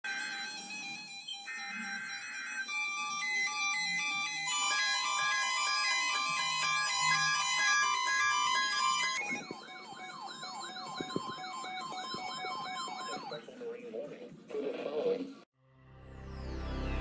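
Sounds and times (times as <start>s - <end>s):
electronic tone melody: 0.1s - 13.4s
siren yelping: 0.2s - 13.4s.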